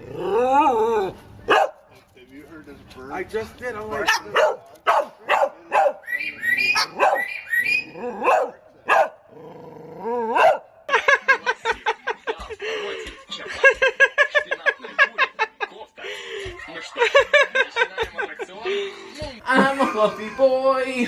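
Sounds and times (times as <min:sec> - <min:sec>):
parrot yapping barks: 0:04.0 - 0:09.2
parrot yelping and whining: 0:06.0 - 0:08.4.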